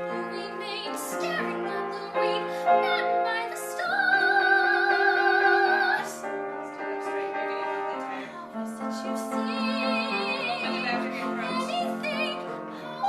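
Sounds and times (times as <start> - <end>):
girl singing with vibrato: 0.0 - 6.2
out-of-tune piano: 0.0 - 13.0.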